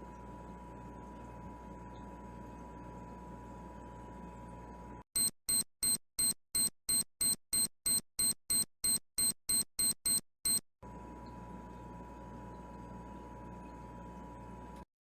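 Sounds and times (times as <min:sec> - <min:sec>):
high-pitched alarm beeps: 0:05.2 - 0:10.6.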